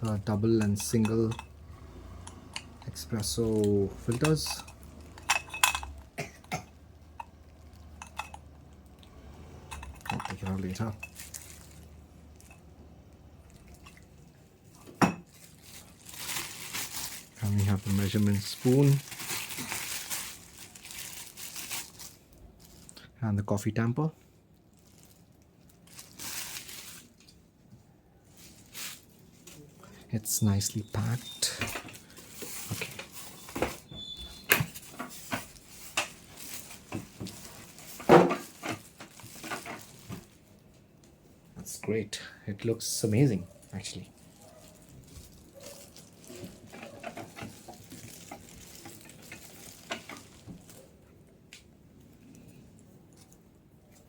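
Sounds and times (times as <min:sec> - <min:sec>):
packaging rustling: 0:00.0 - 0:06.2, 0:09.8 - 0:12.5, 0:15.3 - 0:23.0, 0:24.7 - 0:27.4, 0:30.5 - 0:40.6, 0:43.5 - 0:50.9.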